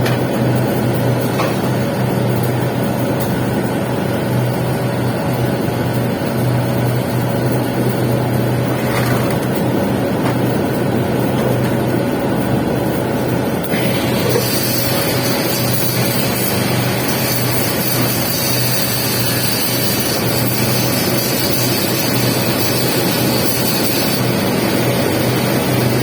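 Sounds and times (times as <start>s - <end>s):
welding arc crackling hiss: 13.6s - 25.1s.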